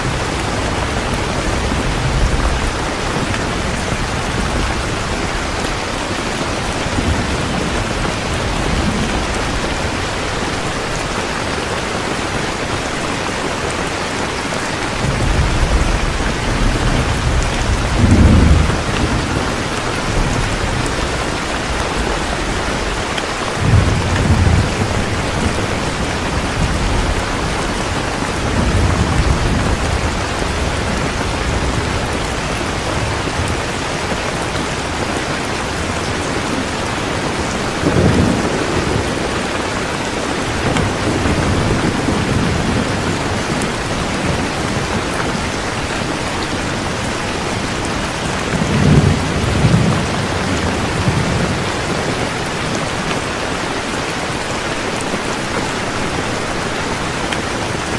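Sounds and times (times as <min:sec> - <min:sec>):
heavy rain pouring: 0:00.0 - 0:57.9
low rolls of thunder: 0:14.9 - 0:34.0, 0:35.7 - 0:52.2.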